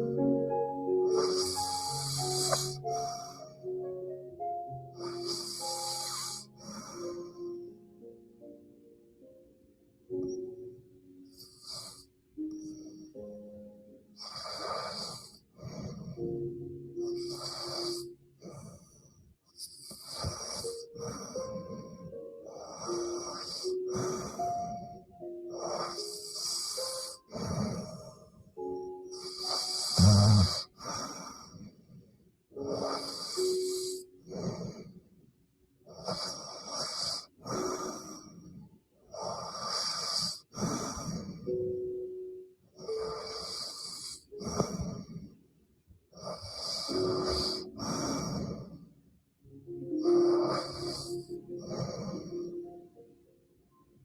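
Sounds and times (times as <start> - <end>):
soft background music: 0.0 - 54.0
woman snoring: 1.1 - 2.9, 29.3 - 30.8.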